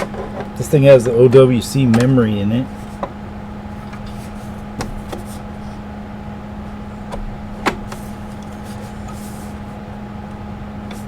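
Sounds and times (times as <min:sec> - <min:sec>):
hardware clicks and knocks: 0:00.0 - 0:02.2
steady low hum: 0:00.0 - 0:11.0.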